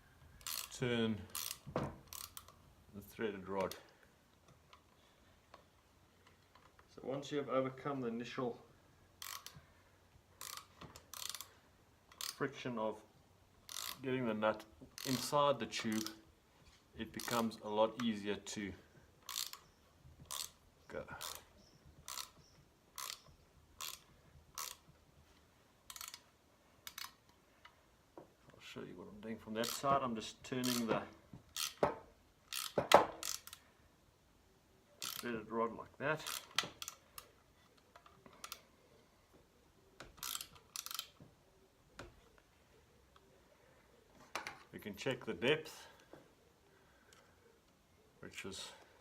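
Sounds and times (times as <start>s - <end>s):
spanner ratchet clicks: 0.4s - 0.7s, 1.3s - 2.6s, 9.2s - 9.6s, 10.4s - 11.5s, 12.1s - 12.4s, 13.6s - 14.0s, 15.0s - 15.3s, 15.9s - 16.2s, 19.2s - 19.7s, 20.3s - 20.6s, 22.0s - 24.8s, 25.9s - 26.2s, 26.8s - 27.2s, 30.6s - 30.9s, 31.5s - 31.8s, 32.5s - 33.6s, 35.0s - 35.3s, 36.2s - 37.3s, 40.1s - 41.2s.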